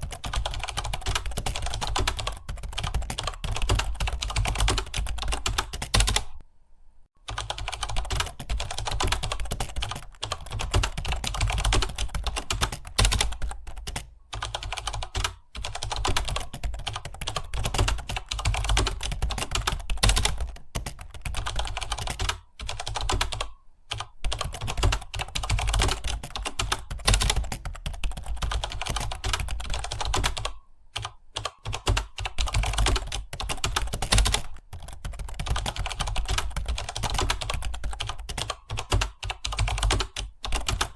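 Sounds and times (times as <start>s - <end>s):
keyboard typing: 0.0s - 6.4s, 7.2s - 40.9s.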